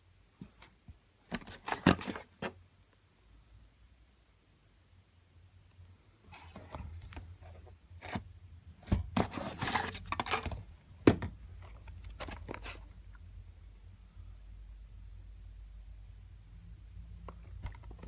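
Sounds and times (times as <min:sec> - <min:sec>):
packaging boxes rustling: 0:01.3 - 0:02.5, 0:08.8 - 0:12.9.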